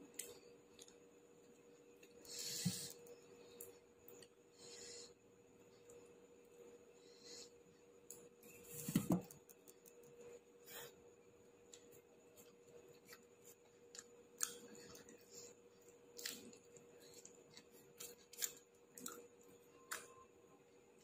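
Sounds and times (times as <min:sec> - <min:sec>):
faint steady hum: 0:00.0 - 0:21.0
crisp chewing crunches: 0:16.1 - 0:19.3.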